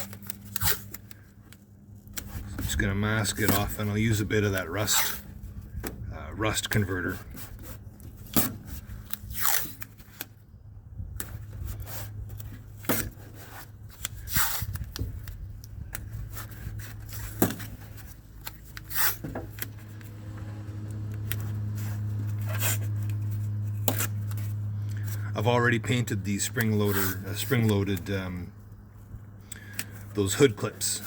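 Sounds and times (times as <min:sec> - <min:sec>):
masking tape ripping: 0:00.0 - 0:05.3, 0:06.6 - 0:10.4, 0:11.2 - 0:20.2, 0:20.8 - 0:25.3, 0:26.4 - 0:28.4.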